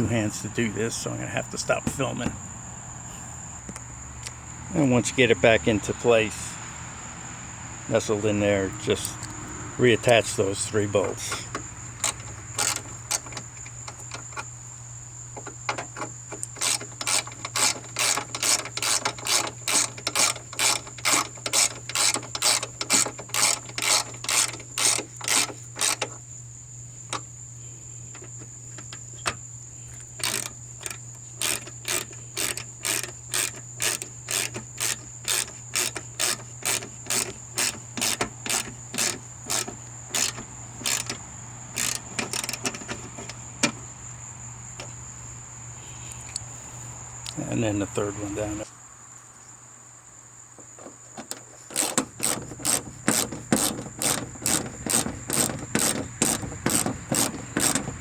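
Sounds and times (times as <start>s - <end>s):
ratchet wrench clicking: 11.0s - 14.5s, 15.4s - 26.2s, 30.2s - 43.4s, 51.7s - 58.0s.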